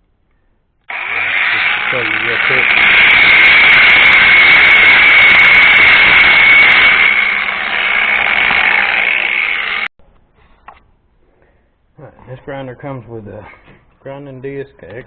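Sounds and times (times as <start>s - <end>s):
angle grinder whining: 0.8s - 9.9s.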